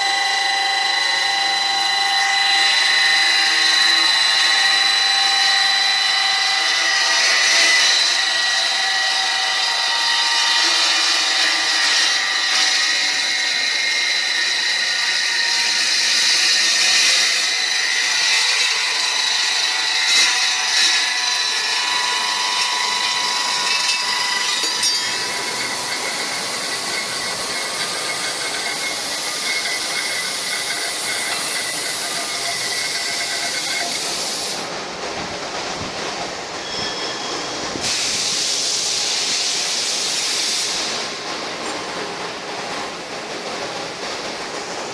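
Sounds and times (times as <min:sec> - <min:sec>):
power tool whining: 0:00.0 - 0:34.8.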